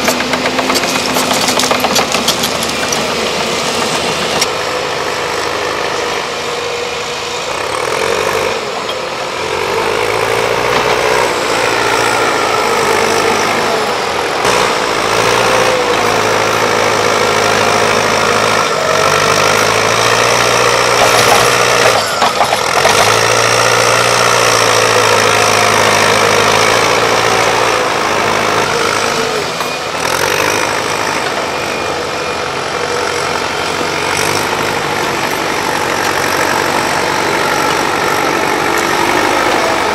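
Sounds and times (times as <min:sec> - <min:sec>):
clatter of knocks: 0:00.0 - 0:03.1
excavator diesel engines: 0:00.0 - 0:39.9.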